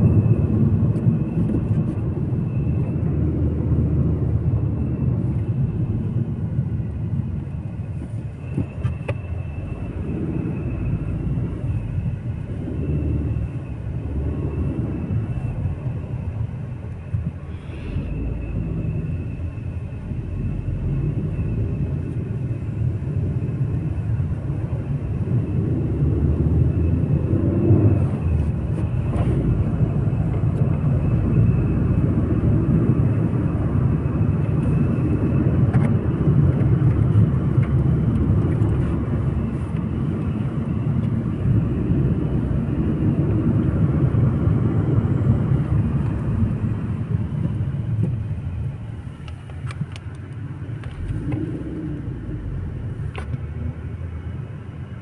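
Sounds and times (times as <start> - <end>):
car interior rumble: 0.0 - 55.0.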